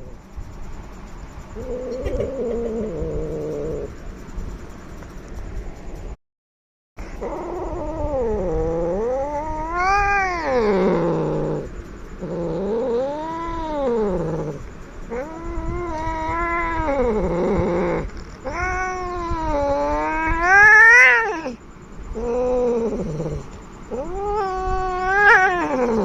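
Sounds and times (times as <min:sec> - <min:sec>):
angry cat yowling: 0:07.2 - 0:26.0.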